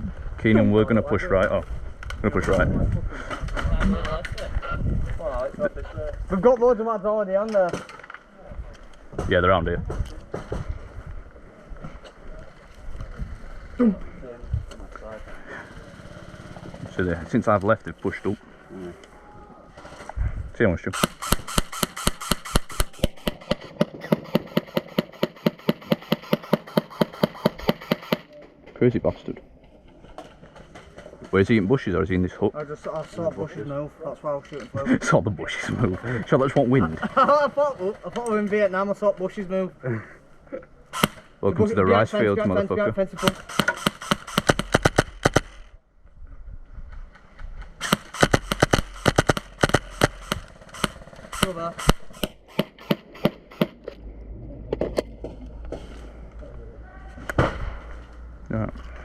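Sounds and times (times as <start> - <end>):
airsoft gun firing: 21.0 - 28.3, 41.0 - 41.3, 43.2 - 45.7, 47.8 - 53.8.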